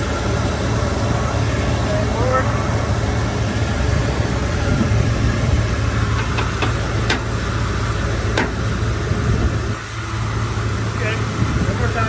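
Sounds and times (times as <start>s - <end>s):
engine humming: 0.0s - 12.0s
sharp pops from truck front end: 6.1s - 7.4s, 8.3s - 8.7s.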